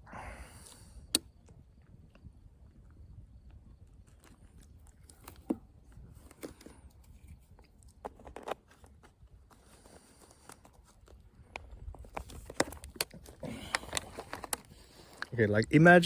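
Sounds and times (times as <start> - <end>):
wind rumble on microphone: 0.1 - 7.9, 11.2 - 14.7
faint crunches and clicks: 0.6 - 15.6.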